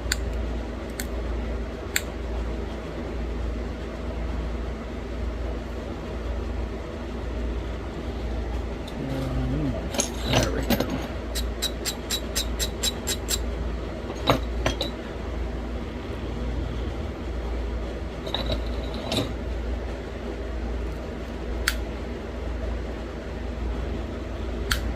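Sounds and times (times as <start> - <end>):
steady low hum: 0.0 - 24.9.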